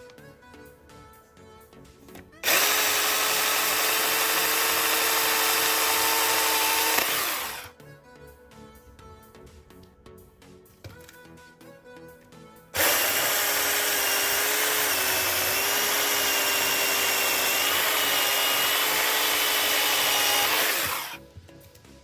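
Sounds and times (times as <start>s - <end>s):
battery chainsaw cutting wood: 2.4s - 7.7s, 12.8s - 21.2s.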